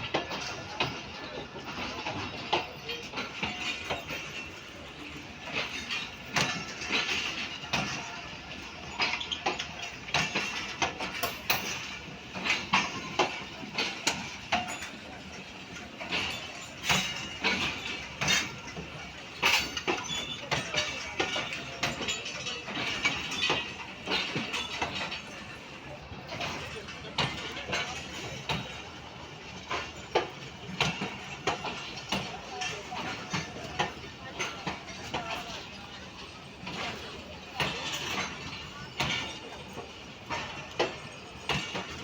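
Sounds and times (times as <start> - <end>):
train wheels clattering on rails: 0.0 - 42.0
metallic knocks and clanks: 8.9 - 35.9.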